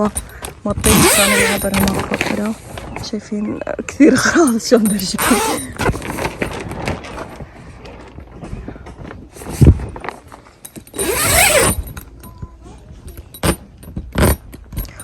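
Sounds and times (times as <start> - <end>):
loud scraping rattle: 0.0 - 3.3, 4.3 - 7.4, 9.4 - 12.2, 13.2 - 15.0.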